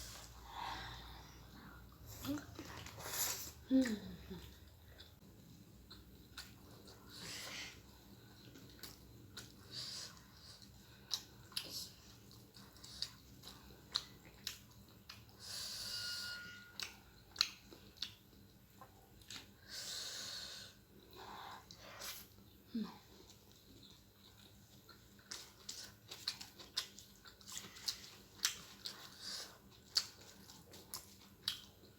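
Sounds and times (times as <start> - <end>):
wet chewing: 23.2 - 31.9.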